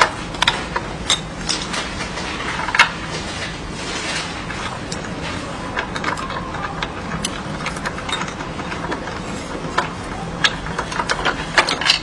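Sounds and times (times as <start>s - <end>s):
steady low hum: 6.8s - 12.0s.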